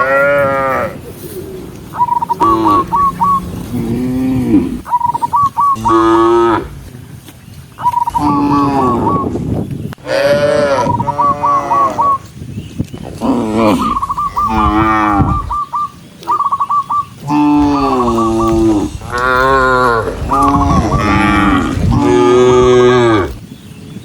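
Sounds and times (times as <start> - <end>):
cattle mooing: 2.3 - 4.9, 5.8 - 6.8, 13.2 - 15.6, 17.2 - 23.4.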